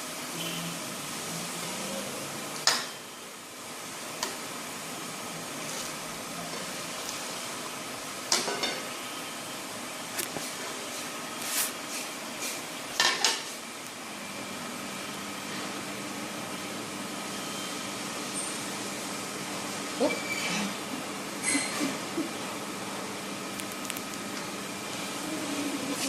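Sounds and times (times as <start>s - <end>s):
metal utensils clinking on dishes: 8.3s - 8.9s, 13.0s - 13.5s.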